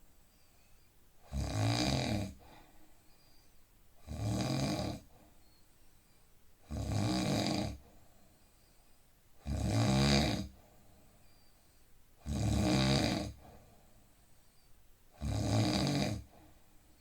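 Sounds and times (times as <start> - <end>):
quiet breathing: 0.0 - 1.3, 2.2 - 4.2, 4.8 - 6.7, 7.6 - 9.4, 10.4 - 12.3, 13.0 - 15.2, 15.9 - 17.0
man snoring: 1.3 - 2.4, 4.0 - 5.1, 6.7 - 7.8, 9.4 - 10.6, 12.2 - 13.4, 15.2 - 16.3.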